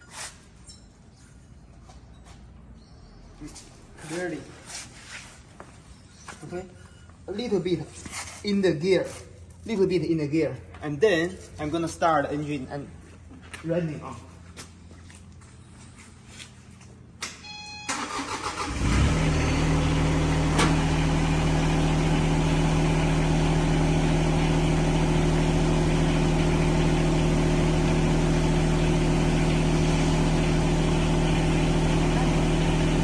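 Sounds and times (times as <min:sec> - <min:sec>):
excavator engine starting and idling: 0:17.2 - 0:33.0
short beep: 0:17.4 - 0:18.0.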